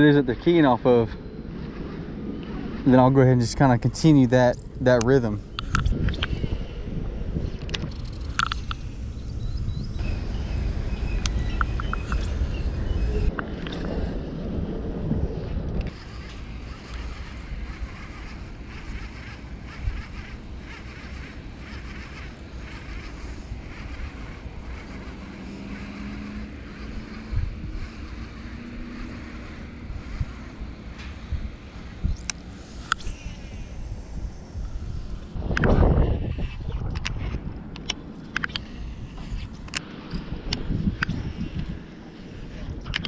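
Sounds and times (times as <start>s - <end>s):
steady low hum: 0.0s - 43.0s
wind buffeting microphone: 0.0s - 43.0s
short clicks: 4.5s - 6.4s.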